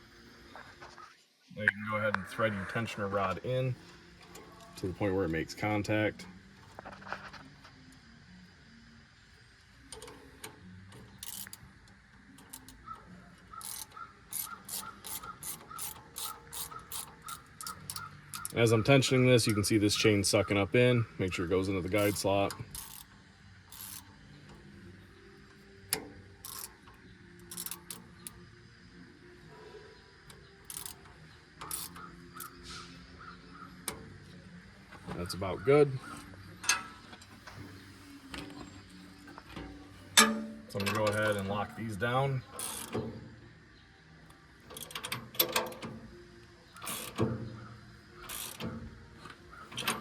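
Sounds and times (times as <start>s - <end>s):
ratchet wrench clicking: 9.8s - 20.6s, 21.4s - 24.7s, 25.3s - 28.4s, 30.2s - 34.4s, 42.5s - 43.3s, 44.7s - 46.1s, 46.7s - 50.0s.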